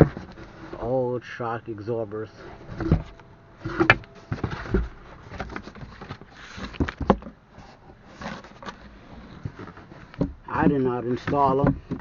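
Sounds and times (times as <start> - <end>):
knocks taps and light clatter: 9.5 - 12.0.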